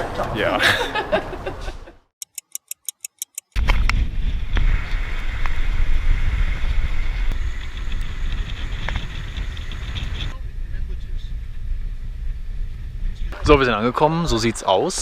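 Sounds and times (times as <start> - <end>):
sharp ticks: 2.2 - 3.8
wind noise on microphone: 3.6 - 15.0
bus road rumble: 4.1 - 13.4.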